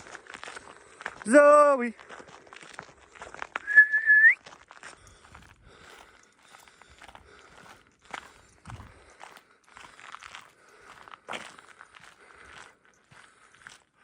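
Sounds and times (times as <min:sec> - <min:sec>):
footsteps on path: 0:00.0 - 0:14.0
person whistling: 0:03.6 - 0:04.4.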